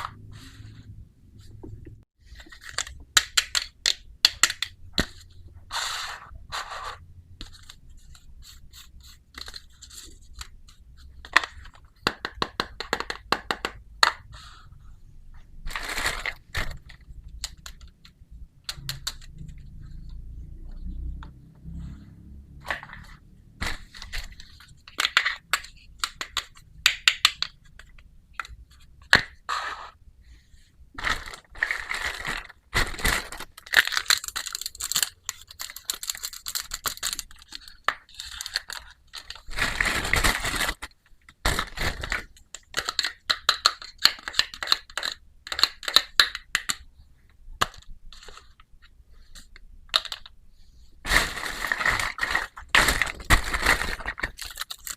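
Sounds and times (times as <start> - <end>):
plastic wrap crinkling and tearing: 31.0 - 43.1, 51.1 - 54.9.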